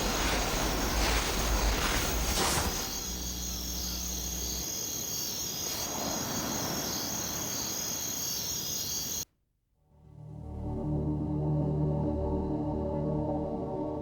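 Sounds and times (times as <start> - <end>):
insect chorus trilling: 0.0 - 9.2.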